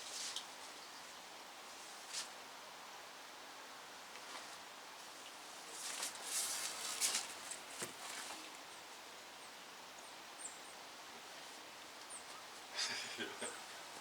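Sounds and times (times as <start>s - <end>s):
rustling and scraping: 4.2s - 8.6s.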